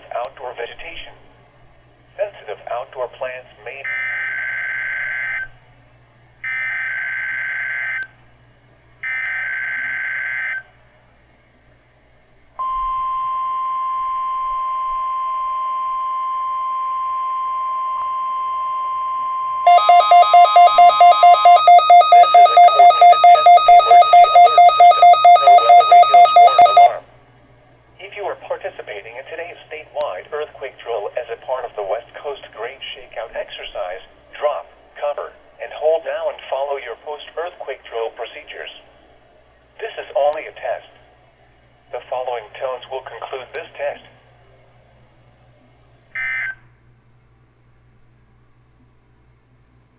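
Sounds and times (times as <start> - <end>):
steady alarm tone: 3.9 - 5.5, 6.4 - 8.0, 12.6 - 27.0
harsh pulsing beep: 12.6 - 27.0
warbling modem-like screech: 19.7 - 27.0.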